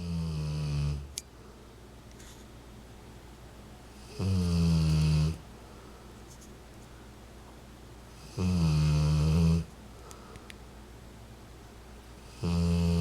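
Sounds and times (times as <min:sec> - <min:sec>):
dog snoring: 0:00.0 - 0:01.1, 0:04.0 - 0:05.4, 0:08.2 - 0:09.7, 0:12.2 - 0:13.0.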